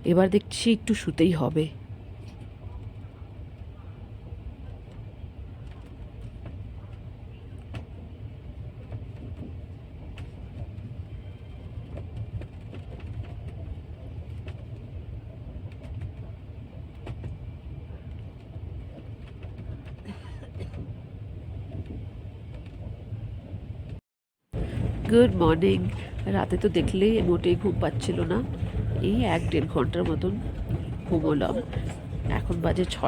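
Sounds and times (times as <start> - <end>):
train rumbling inside coach: 0.0 - 24.0, 24.6 - 33.0
train clicks and creaks: 4.8 - 8.0, 8.7 - 23.0, 24.6 - 33.0.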